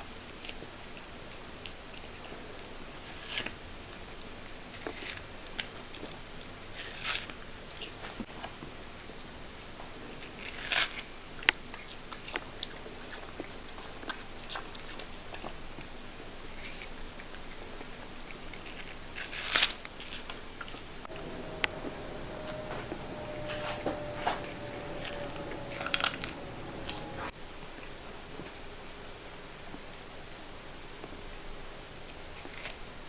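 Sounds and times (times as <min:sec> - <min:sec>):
cat chewing melon: 0:00.3 - 0:08.8, 0:10.1 - 0:22.1, 0:24.4 - 0:27.0, 0:32.1 - 0:32.9.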